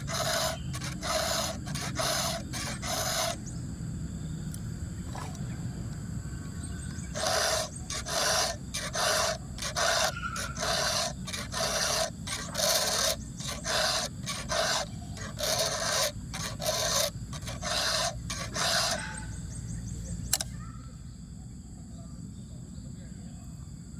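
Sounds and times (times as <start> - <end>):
file rasping on saw chain: 0.0 - 3.5, 6.9 - 19.4
sharp click: 20.3 - 20.6.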